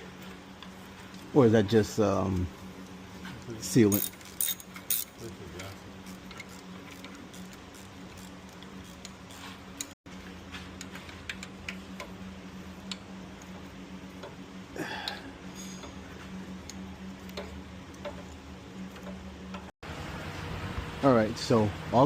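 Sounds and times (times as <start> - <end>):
steady low hum: 0.0 - 22.0
metallic clicks of hand tools: 3.9 - 5.7.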